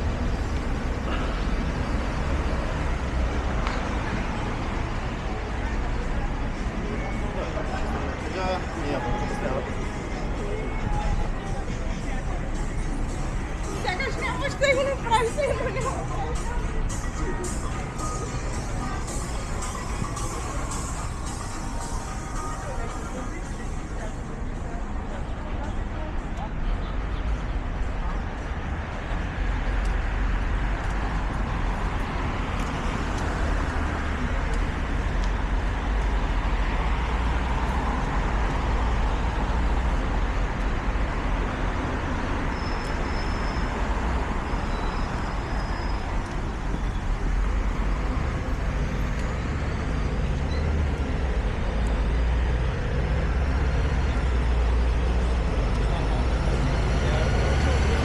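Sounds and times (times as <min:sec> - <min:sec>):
passing cars and buses: 0:00.0 - 0:58.0
vehicle accelerating whine: 0:43.8 - 0:58.0.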